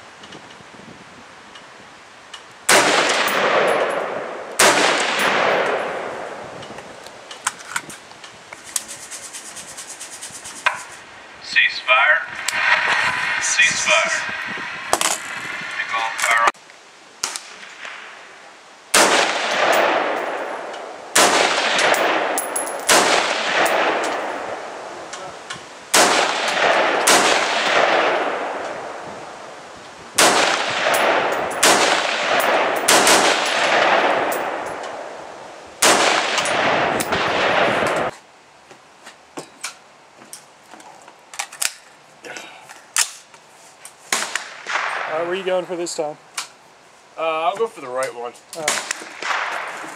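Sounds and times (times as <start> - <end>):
rifle shots with echo: 2.7 - 6.5, 18.9 - 24.8, 25.9 - 29.0, 30.2 - 38.1, 44.1 - 45.5, 48.6 - 49.8.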